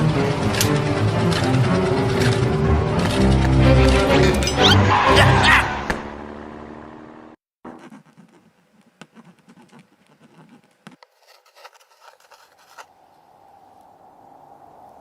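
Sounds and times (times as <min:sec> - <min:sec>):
scratching and rustling: 0:07.7 - 0:12.9.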